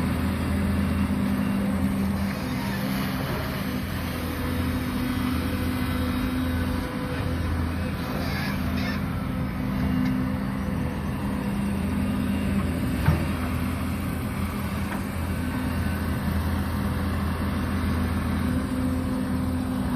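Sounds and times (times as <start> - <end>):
excavator engine running: 0.0 - 19.9.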